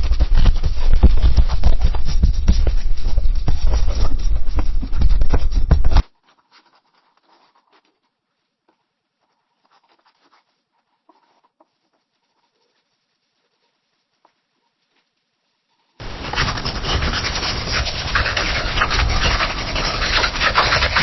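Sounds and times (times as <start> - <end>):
pencil writing on paper: 16.0 - 21.0.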